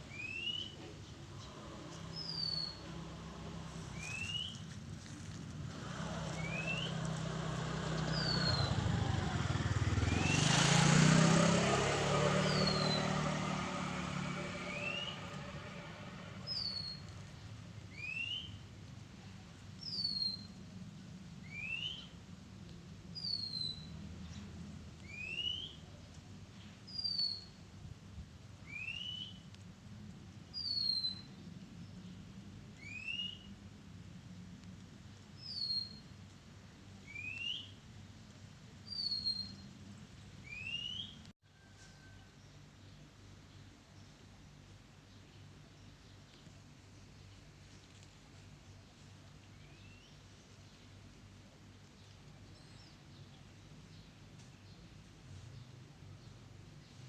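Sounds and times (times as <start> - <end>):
passing vehicle: 1.2 - 17.4.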